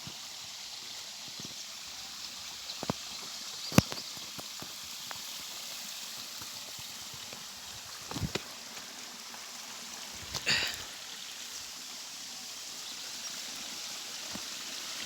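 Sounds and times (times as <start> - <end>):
small stream running: 0.0 - 15.0.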